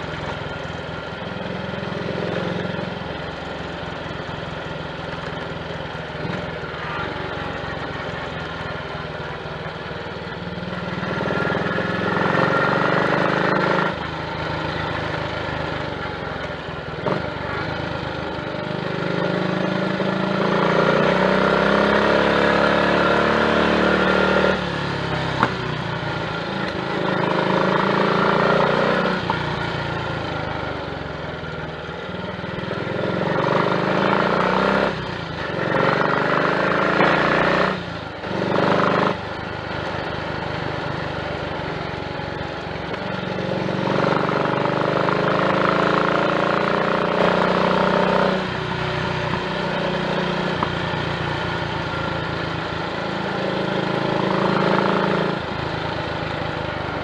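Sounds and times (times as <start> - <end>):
motorcycle engine revving: 0.0 - 57.0.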